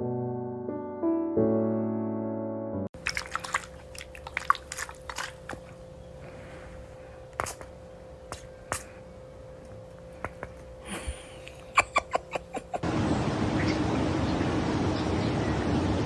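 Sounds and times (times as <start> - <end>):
piano music: 0.0 - 2.9
small wet sounds: 3.0 - 8.9
steady hum: 3.0 - 16.0.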